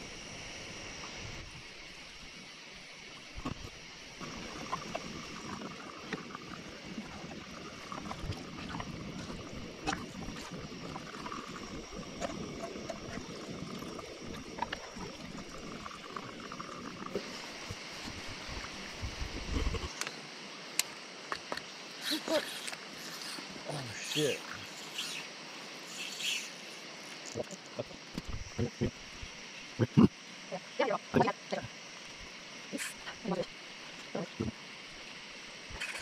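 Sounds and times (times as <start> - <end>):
water trickling and splashing: 3.1 - 20.0.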